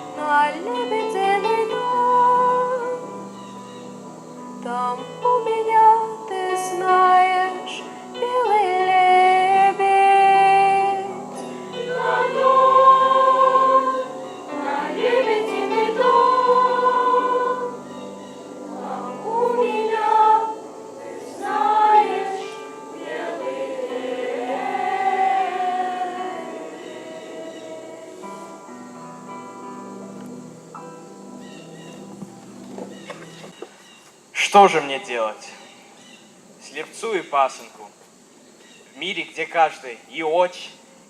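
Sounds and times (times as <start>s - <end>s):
choir singing: 0.0s - 3.2s, 4.6s - 28.9s.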